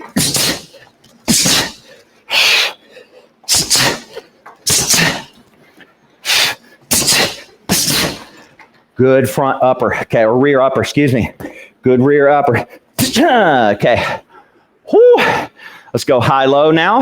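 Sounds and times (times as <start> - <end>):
sharp forced breaths: 0.0 - 5.4, 6.2 - 8.5.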